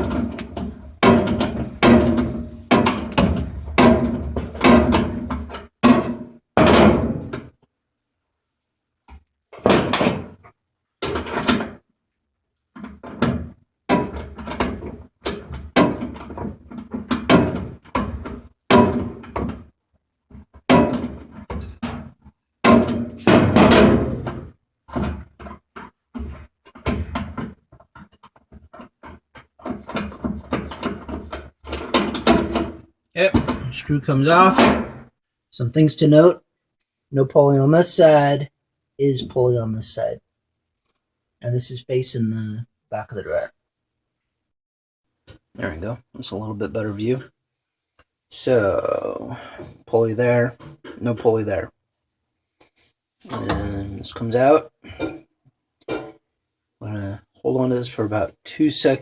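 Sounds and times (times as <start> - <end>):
metallic knocks and clunks: 0.0 - 7.7, 9.1 - 11.9, 12.7 - 35.2, 52.6 - 56.3.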